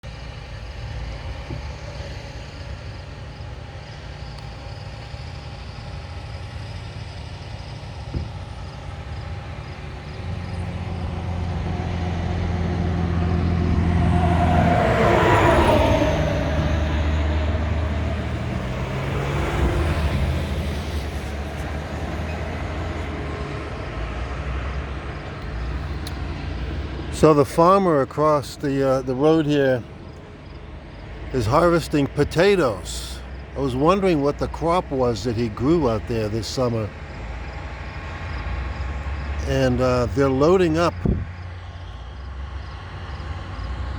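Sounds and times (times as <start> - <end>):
heavy machinery engines droning: 0.0 - 43.9
vehicle passing by: 10.2 - 43.9.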